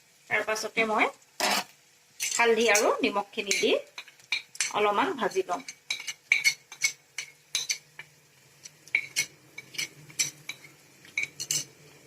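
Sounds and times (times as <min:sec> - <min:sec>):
metal spatula clinking in pan: 0:01.4 - 0:04.8, 0:05.6 - 0:08.1, 0:08.9 - 0:11.8.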